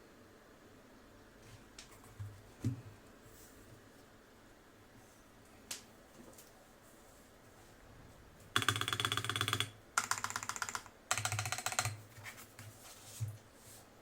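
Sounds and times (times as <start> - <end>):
mechanical keyboard typing: 8.6 - 12.0.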